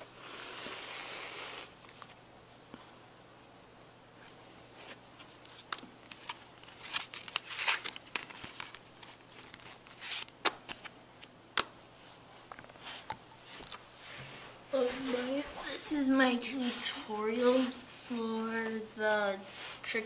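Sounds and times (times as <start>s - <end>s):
playing cards rustling: 4.2s - 11.8s, 12.4s - 20.0s
sharp card clicks: 5.7s - 11.8s.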